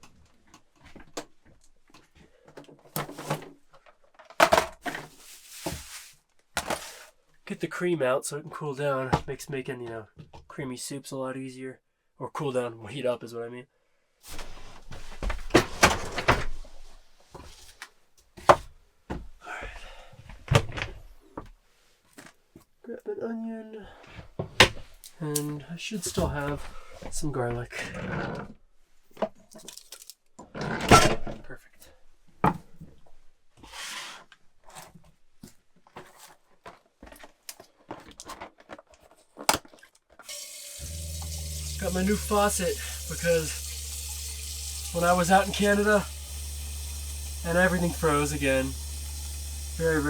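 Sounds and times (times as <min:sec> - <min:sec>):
soft rustle: 0:05.0 - 0:06.3
faucet running water: 0:40.2 - 0:50.0.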